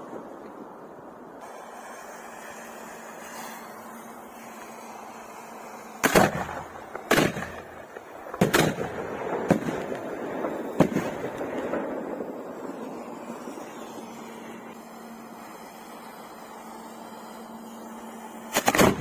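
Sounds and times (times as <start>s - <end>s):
fireworks bangs: 0.0s - 19.0s
rumble: 0.0s - 19.0s.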